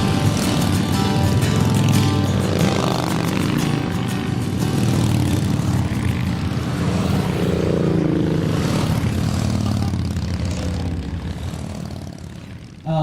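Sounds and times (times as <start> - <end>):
motorcycle engines rumbling: 0.0 - 13.0.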